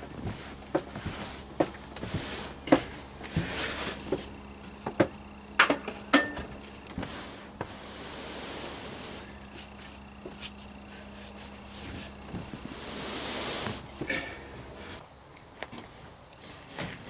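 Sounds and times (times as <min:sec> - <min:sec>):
tools knocking and clunking: 0:00.0 - 0:07.1
short scrape: 0:12.7 - 0:13.9.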